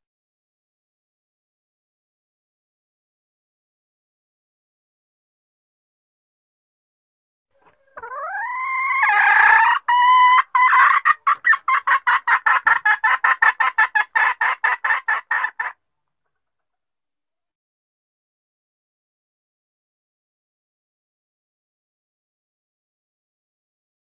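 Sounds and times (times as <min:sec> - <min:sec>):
hen rising squawk: 0:07.6 - 0:12.4
hen quick clucks: 0:07.6 - 0:15.8.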